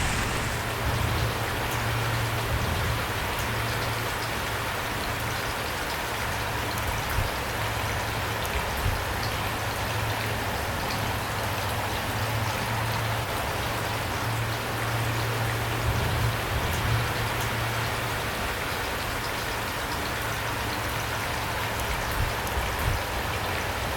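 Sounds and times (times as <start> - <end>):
rainfall hiss: 0.0 - 5.1.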